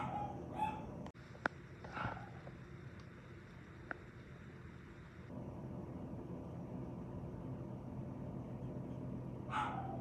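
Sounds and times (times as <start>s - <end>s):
dog barking: 0.0s - 1.0s, 1.9s - 2.5s, 9.5s - 10.0s.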